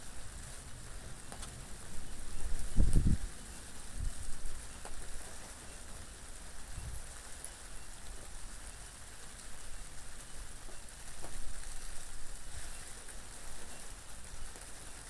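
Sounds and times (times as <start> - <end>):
low rumble of wind: 0.0 - 5.5
steady rain falling: 0.0 - 15.0.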